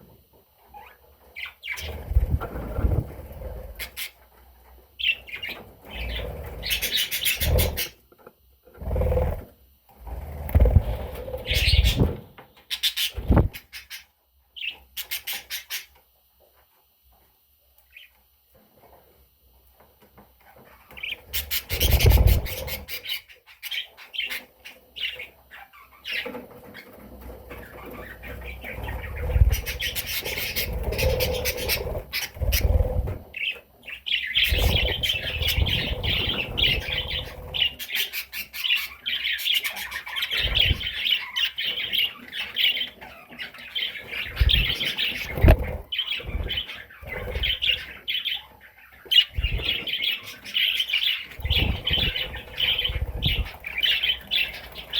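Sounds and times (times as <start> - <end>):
budgerigar chirping and warbling: 5.1 - 8.0, 27.9 - 33.6.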